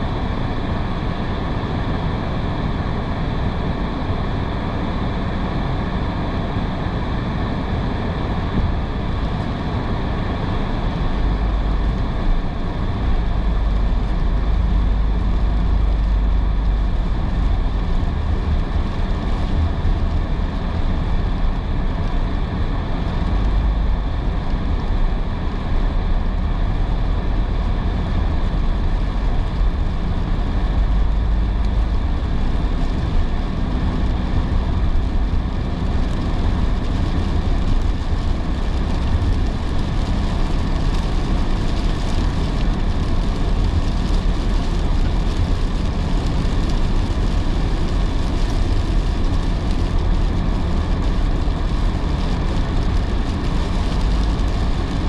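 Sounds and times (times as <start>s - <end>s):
car interior rumble: 0.0s - 55.0s
tyre hiss on wet road: 28.5s - 55.0s.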